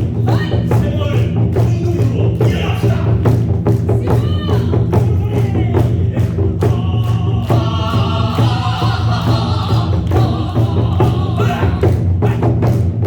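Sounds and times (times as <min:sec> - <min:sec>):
drums beaten in rhythm: 0:00.0 - 0:13.0
steady low drone: 0:05.9 - 0:12.2
person singing: 0:06.6 - 0:12.0.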